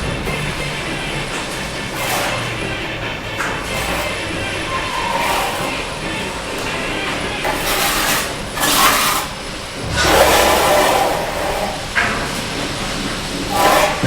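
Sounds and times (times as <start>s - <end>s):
trowel scraping brick: 0.0s - 14.0s.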